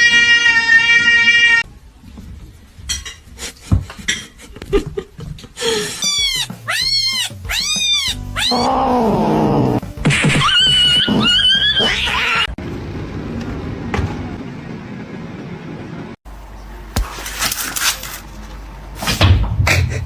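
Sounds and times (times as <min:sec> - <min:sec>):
cat meowing: 0:06.0 - 0:09.8, 0:11.1 - 0:12.5.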